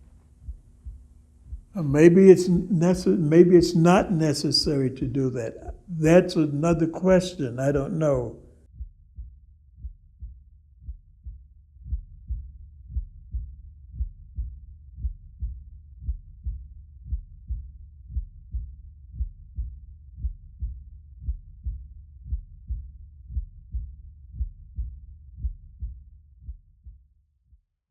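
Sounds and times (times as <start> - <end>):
muffled heartbeat thumping: 0.0 - 4.8.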